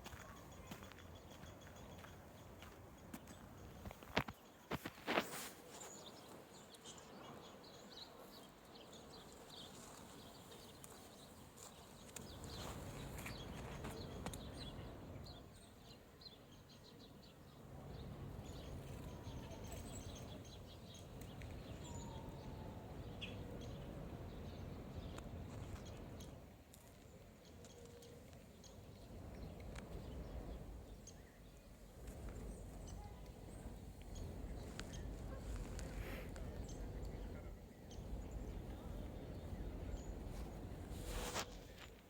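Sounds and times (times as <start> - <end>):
footsteps crunching in snow: 0.0 - 6.4, 40.2 - 42.0.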